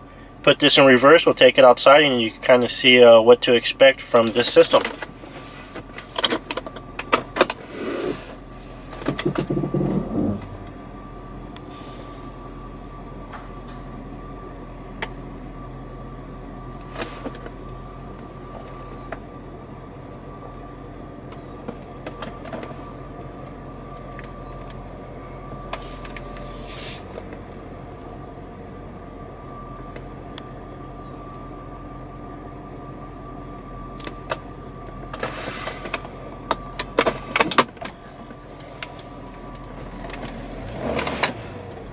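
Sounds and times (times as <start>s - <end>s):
car engine idling: 0.0s - 41.9s
clicks and rustling knocks: 9.0s - 10.7s.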